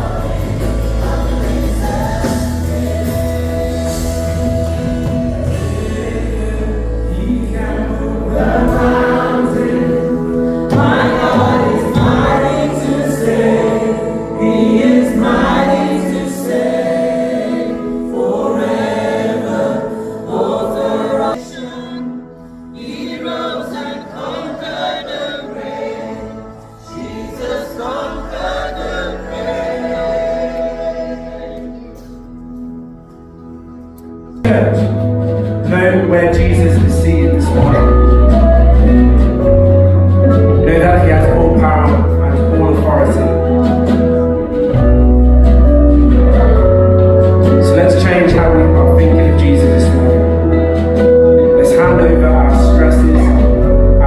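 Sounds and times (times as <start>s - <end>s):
congregation singing a hymn: 0.0s - 54.0s
instrumental backing: 0.0s - 54.0s.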